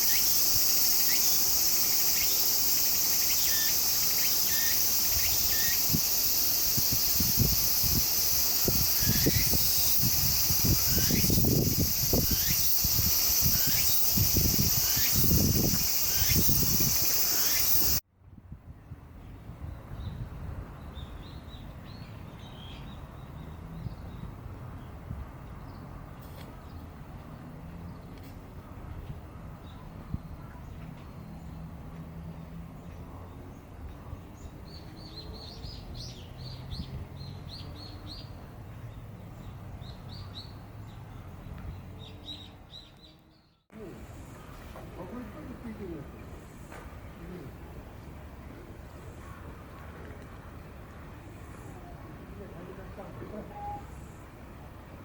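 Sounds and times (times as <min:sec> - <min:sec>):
high-pitched insect chorus: 0:00.0 - 0:18.0.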